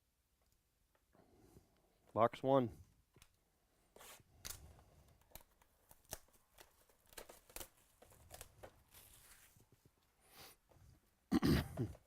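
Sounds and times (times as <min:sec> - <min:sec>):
card packs clicking and rustling: 0:04.4 - 0:09.5.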